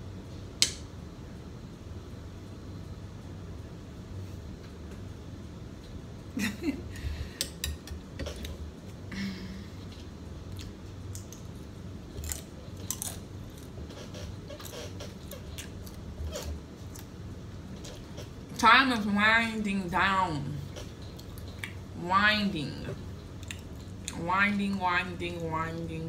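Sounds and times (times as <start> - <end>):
steady low hum: 0.0 - 26.0
person chewing food: 9.8 - 18.4, 20.7 - 21.8, 23.4 - 24.2.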